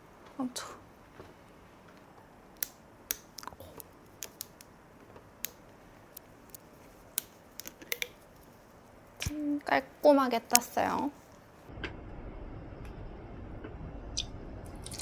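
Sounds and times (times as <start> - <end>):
plastic screw cap clicking: 4.2 - 4.7.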